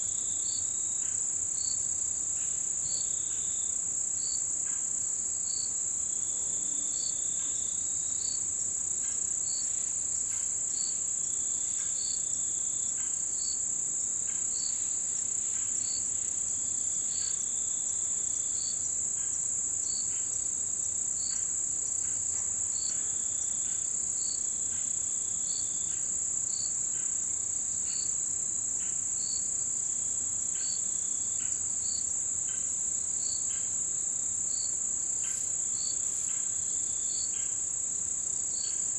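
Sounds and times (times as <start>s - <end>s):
insect steady high trill: 30.6s - 38.9s
insect short chirps: 34.5s - 37.6s
insect short trills: 35.2s - 37.3s.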